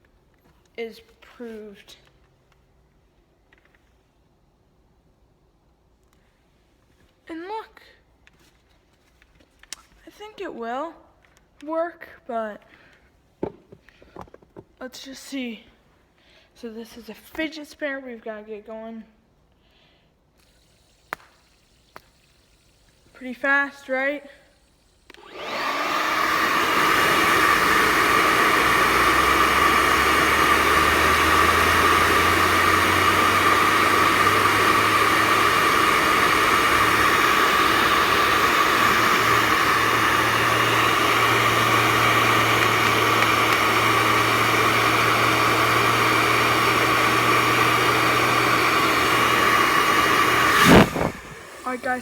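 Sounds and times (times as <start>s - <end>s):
hair dryer blowing: 22.7s - 52.0s
fidget spinner hum rising in pitch: 28.7s - 40.9s, 49.7s - 52.0s.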